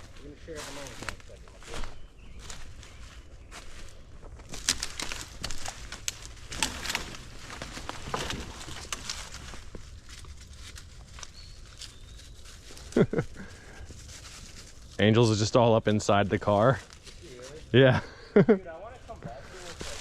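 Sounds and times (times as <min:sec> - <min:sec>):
footsteps crunching on trail: 0:00.0 - 0:15.0, 0:19.1 - 0:20.0.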